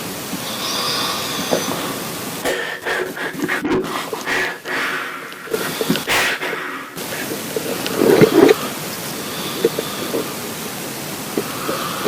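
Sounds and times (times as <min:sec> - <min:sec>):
man breathing heavily: 0:02.4 - 0:07.4.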